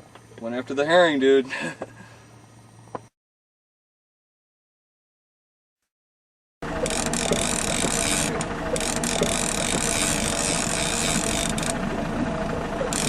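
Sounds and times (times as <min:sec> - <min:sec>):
fishing reel ratchet clicking: 0:06.8 - 0:11.8, 0:12.8 - 0:13.0.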